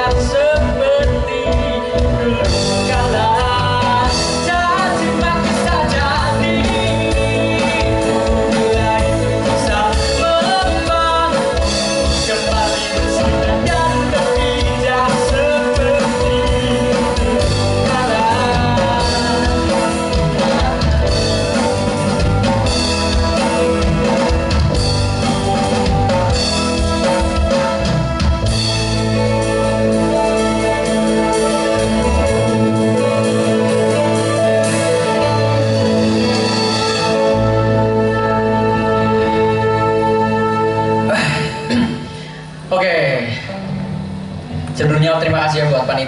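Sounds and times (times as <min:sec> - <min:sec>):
person singing: 0:00.0 - 0:24.7
live rock band playing: 0:00.0 - 0:46.0.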